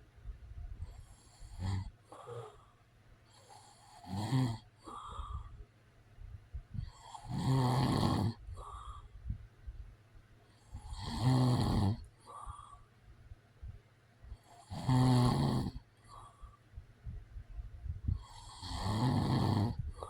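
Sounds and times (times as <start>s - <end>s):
quiet breathing: 0.0s - 20.0s
man snoring: 1.1s - 2.7s, 3.4s - 5.5s, 6.8s - 9.0s, 10.7s - 12.7s, 14.4s - 16.2s, 18.2s - 20.0s.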